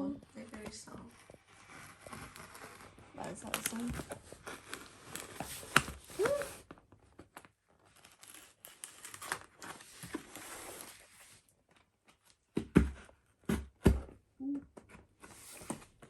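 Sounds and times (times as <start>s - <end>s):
paper and cardboard tearing: 0.6s - 6.7s, 7.8s - 11.2s.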